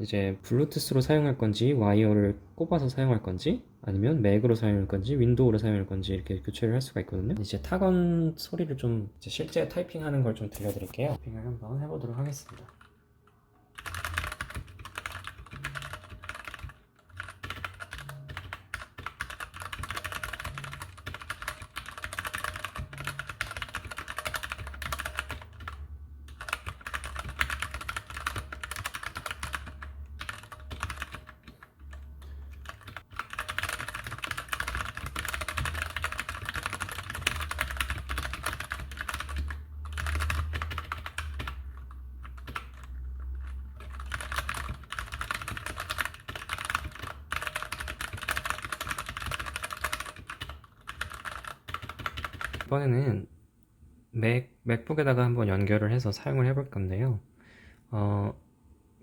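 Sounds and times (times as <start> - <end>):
mechanical keyboard typing: 12.2 - 12.9, 13.8 - 52.7.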